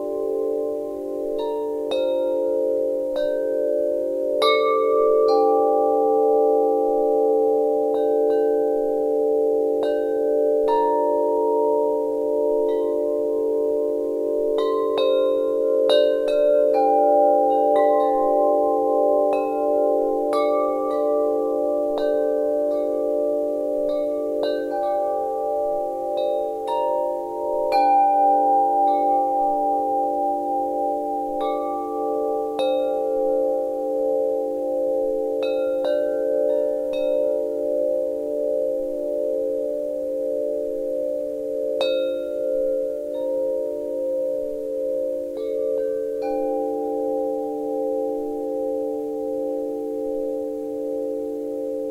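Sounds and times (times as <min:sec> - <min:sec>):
wind chimes ringing: 0:00.0 - 0:50.7.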